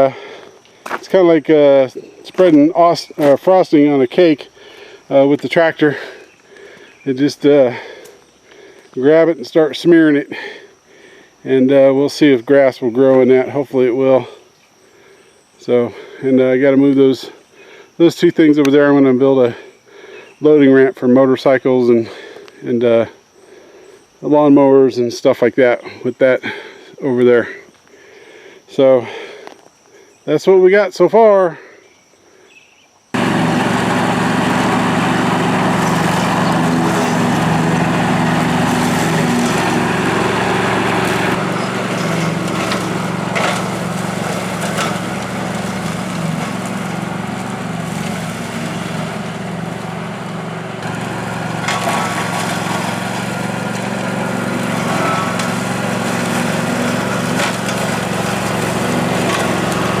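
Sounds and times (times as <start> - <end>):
engine running: 33.2 - 60.0.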